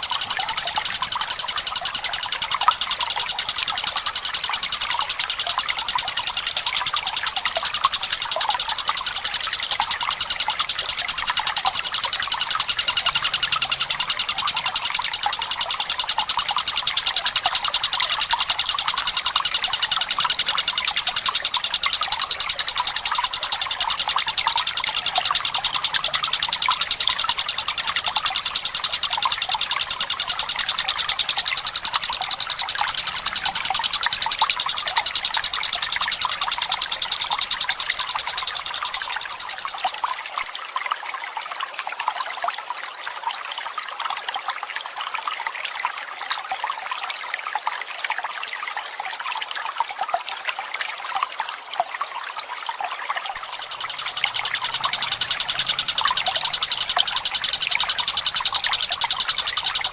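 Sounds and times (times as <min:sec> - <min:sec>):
kingfisher rattling trills: 0:00.0 - 0:40.1, 0:53.3 - 0:59.9
running water trickling: 0:00.0 - 0:59.9.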